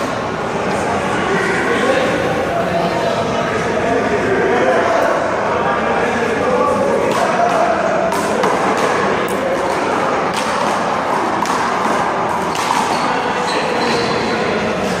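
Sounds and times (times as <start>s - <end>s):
steady noisy background: 0.0s - 15.0s
handball slapping wall and court: 7.1s - 14.2s.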